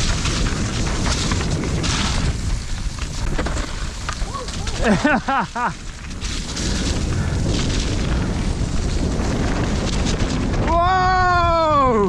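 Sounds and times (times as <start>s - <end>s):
bike rumbling on muddy trail: 0.0s - 11.6s
wind buffeting microphone: 0.0s - 12.0s
person shouting: 10.7s - 12.0s.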